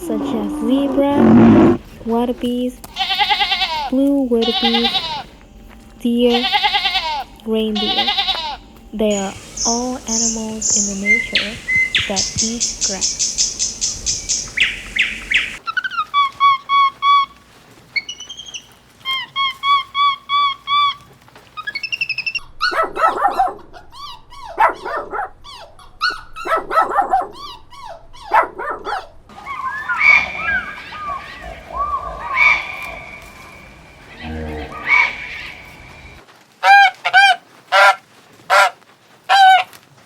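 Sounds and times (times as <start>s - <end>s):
animal calls rising and falling: 0.0s - 1.8s, 29.3s - 36.2s
animal whistle-like calls: 29.4s - 36.2s.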